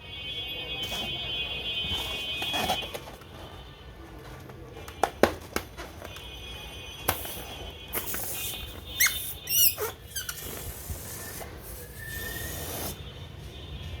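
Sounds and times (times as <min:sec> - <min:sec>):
balloons squeaking: 0:07.1 - 0:13.0.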